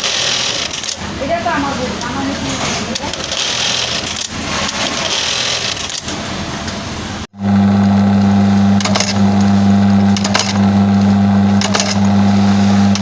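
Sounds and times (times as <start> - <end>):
machine clattering clicks: 2.9 - 6.2, 8.8 - 9.5, 10.1 - 10.6, 11.6 - 12.2
low machine hum: 7.4 - 13.0.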